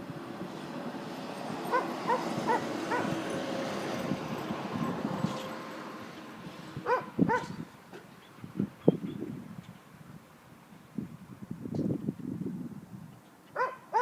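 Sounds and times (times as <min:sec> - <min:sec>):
dog barking: 0:01.7 - 0:03.2, 0:06.9 - 0:07.6, 0:13.6 - 0:14.0.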